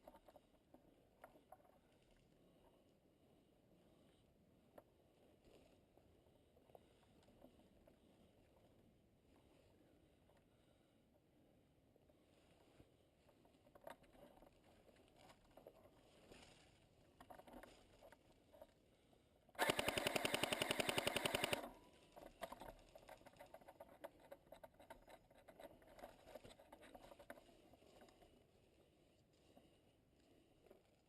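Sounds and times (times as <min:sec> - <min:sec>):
faint rustling and clicks: 0:00.0 - 0:03.0, 0:04.0 - 0:10.6, 0:12.0 - 0:31.0
airsoft rifle full-auto burst: 0:19.6 - 0:21.7.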